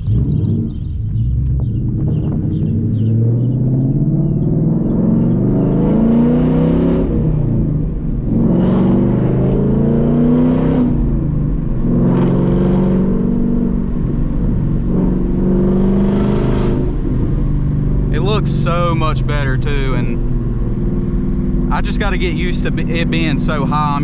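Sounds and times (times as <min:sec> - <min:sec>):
car engine accelerating: 0:00.0 - 0:24.0.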